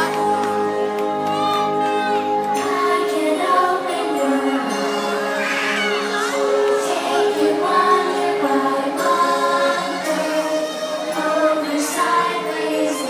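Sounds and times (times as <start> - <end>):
soundtrack music: 0.0 - 3.9
choir singing held notes: 0.0 - 13.0.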